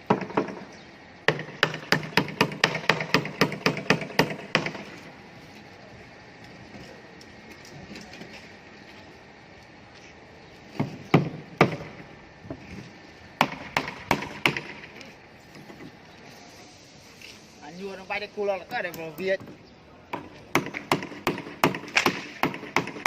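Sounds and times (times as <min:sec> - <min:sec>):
hammer striking nails into wood: 0:01.3 - 0:04.9, 0:13.4 - 0:14.9, 0:20.2 - 0:23.0.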